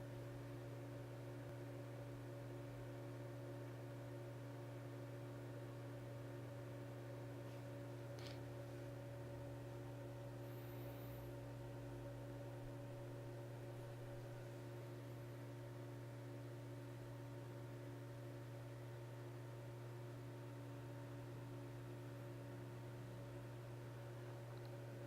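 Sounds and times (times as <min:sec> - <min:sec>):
low electrical hum: 0:00.0 - 0:25.0.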